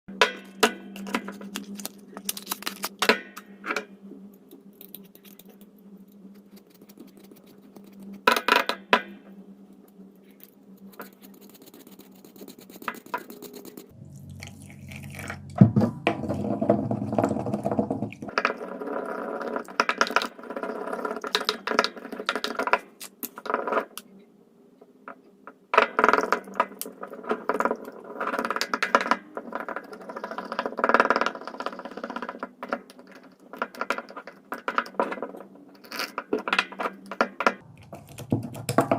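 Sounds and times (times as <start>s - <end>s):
faint low hum: 0.1s - 19.2s
soap crunching and crackling: 1.0s - 3.1s, 37.6s - 38.9s.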